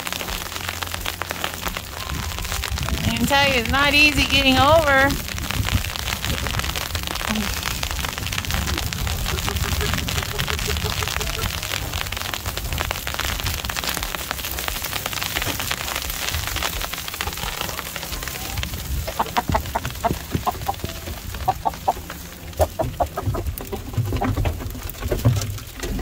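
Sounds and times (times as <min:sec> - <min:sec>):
ice rain hitting an umbrella: 0:00.0 - 0:26.0
chickens clucking: 0:08.5 - 0:11.8, 0:17.2 - 0:25.0.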